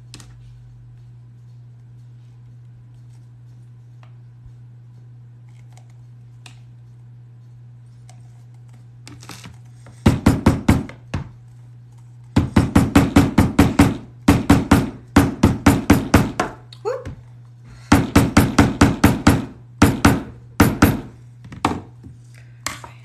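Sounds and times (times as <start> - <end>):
rapid hammer blows on leather: 10.0 - 11.1, 12.4 - 16.6, 17.9 - 21.2.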